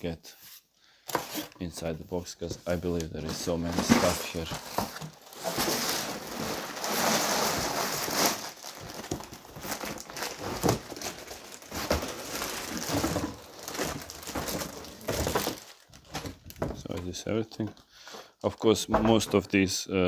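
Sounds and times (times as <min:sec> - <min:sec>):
packaging crinkling and rustling: 0:02.6 - 0:17.8.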